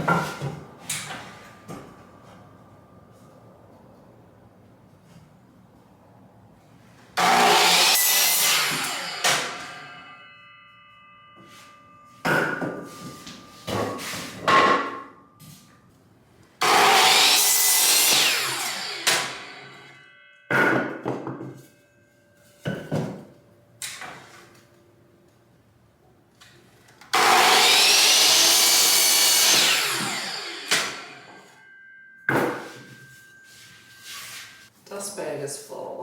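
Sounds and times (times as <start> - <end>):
electric saw cutting wood: 7.2 - 10.4, 16.6 - 20.1, 27.1 - 31.6.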